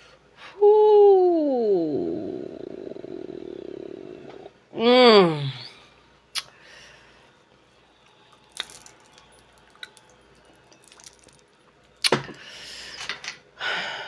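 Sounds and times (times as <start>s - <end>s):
shells clicking and clattering: 8.5s - 12.4s.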